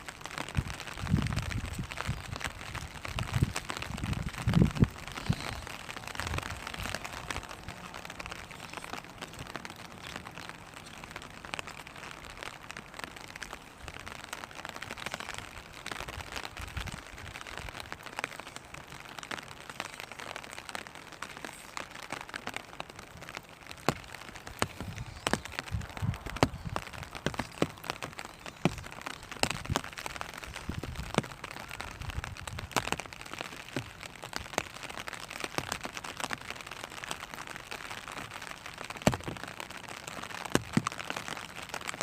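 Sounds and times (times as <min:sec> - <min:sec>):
rain pattering on plastic umbrella: 0:00.0 - 0:42.0.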